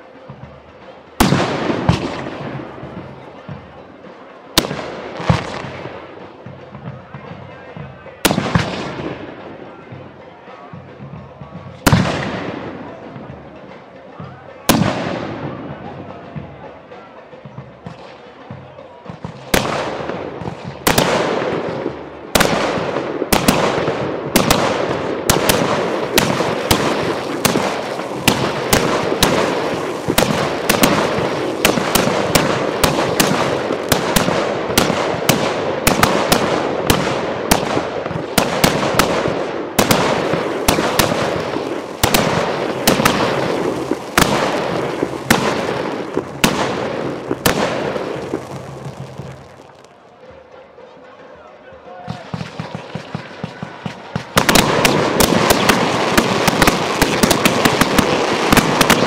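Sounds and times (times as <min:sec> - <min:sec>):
fireworks bangs: 0:01.1 - 0:03.8, 0:04.5 - 0:10.1, 0:11.2 - 0:13.8, 0:14.7 - 0:16.6, 0:19.2 - 0:50.4, 0:52.1 - 0:59.0
fireworks crackle: 0:04.6 - 0:06.8, 0:19.2 - 0:50.4, 0:52.1 - 0:59.0.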